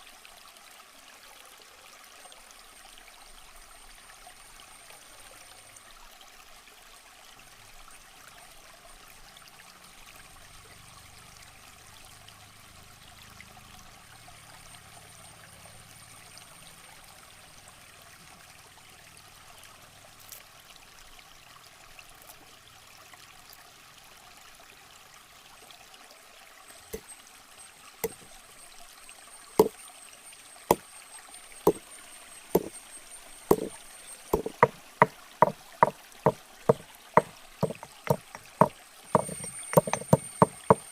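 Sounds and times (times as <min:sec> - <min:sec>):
water trickling: 0:00.0 - 0:40.9
sharp rhythmic knocks: 0:28.0 - 0:28.4, 0:29.6 - 0:29.8, 0:31.6 - 0:40.9.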